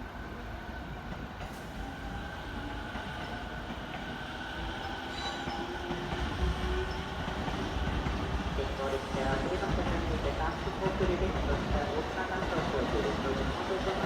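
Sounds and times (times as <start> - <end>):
electric train rumbling on rails: 0.0 - 14.0
high wheel squeal: 5.0 - 5.6.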